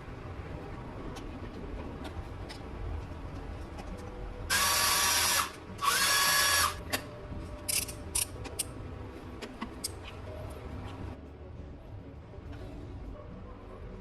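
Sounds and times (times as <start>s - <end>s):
power tool motor whine: 4.5s - 6.8s.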